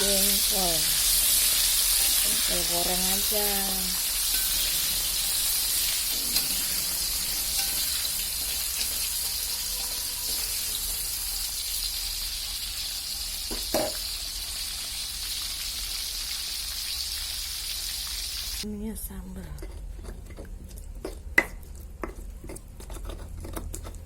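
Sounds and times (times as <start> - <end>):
food sizzling in hot oil: 0.0 - 18.7.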